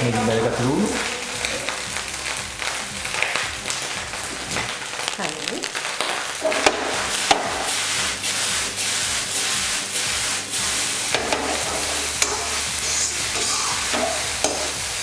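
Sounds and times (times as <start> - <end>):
rice sizzling in a pan: 0.0 - 15.0
utensil clicking against pan: 6.0 - 7.8, 11.1 - 15.0.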